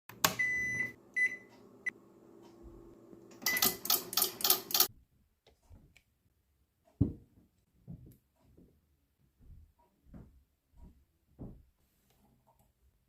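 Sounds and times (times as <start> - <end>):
microwave oven humming: 0.1 - 4.9
microwave keypad beeps: 0.2 - 2.0, 3.4 - 4.1.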